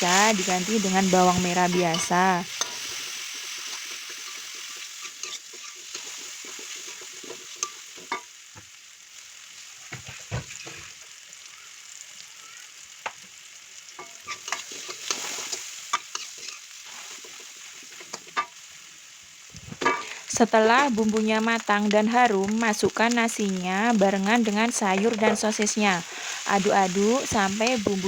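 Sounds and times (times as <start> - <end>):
paste sizzling in hot oil: 0.0 - 28.0
spatula scraping a pan: 1.6 - 8.3, 9.8 - 11.0, 14.0 - 18.6.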